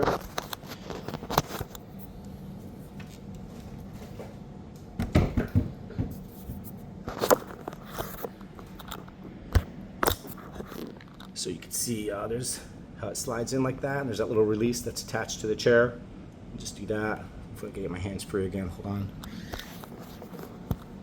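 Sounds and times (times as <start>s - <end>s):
steady low hum: 0.0s - 21.0s
folding chair knocks and rattles: 5.0s - 6.2s.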